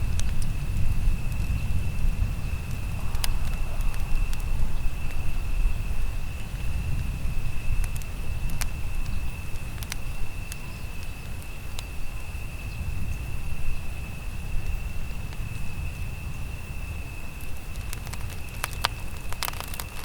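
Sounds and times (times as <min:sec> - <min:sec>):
campfire crackling and popping: 0:00.0 - 0:12.5, 0:17.3 - 0:20.0
low steady rumble: 0:00.0 - 0:15.0
insect high-pitched trill: 0:00.0 - 0:15.2.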